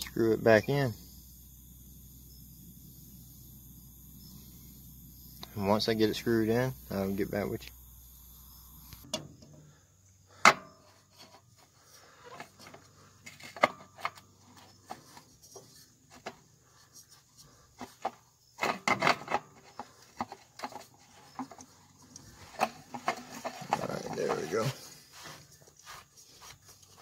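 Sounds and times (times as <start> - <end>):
oil filter clicks and scrapes: 11.1 - 24.8.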